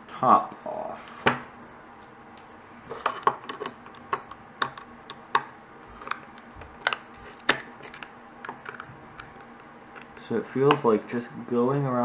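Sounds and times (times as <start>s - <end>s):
blade prying hard drive cover: 2.9s - 11.0s.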